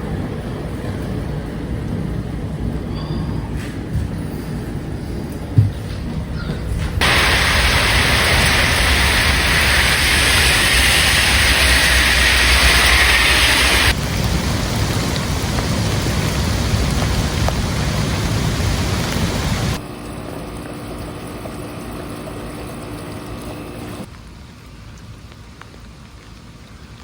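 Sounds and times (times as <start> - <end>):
low thunder rumble: 6.1 - 19.8
heavy rain hiss: 7.0 - 24.1.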